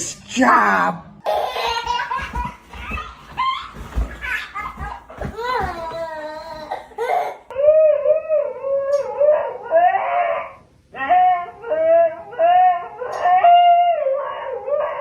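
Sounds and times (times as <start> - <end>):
dog howling: 7.5 - 15.0.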